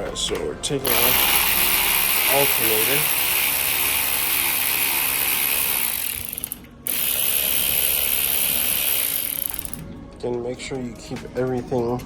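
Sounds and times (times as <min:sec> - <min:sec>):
impact wrench running: 0:00.8 - 0:09.8.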